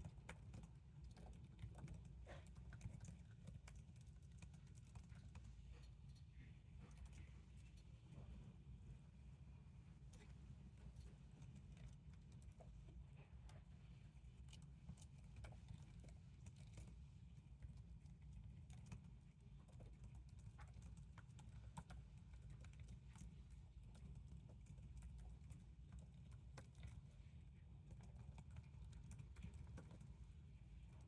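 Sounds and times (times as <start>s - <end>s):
low room hum: 0.0s - 31.0s
laptop keyboard typing: 18.4s - 27.0s.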